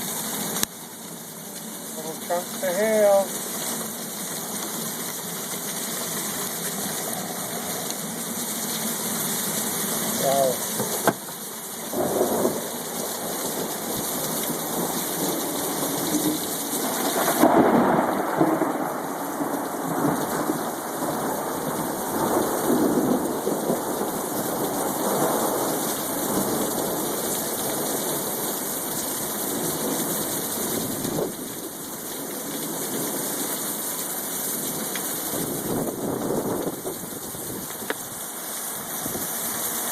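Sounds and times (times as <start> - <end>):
heavy rain: 0.0 - 39.9
thunder rumbling: 11.9 - 27.1.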